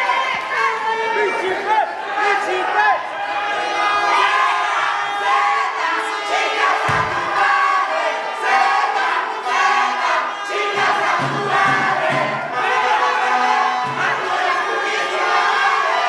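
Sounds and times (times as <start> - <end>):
crowd shouting and chanting: 0.0 - 16.0
low thud: 6.8 - 7.4.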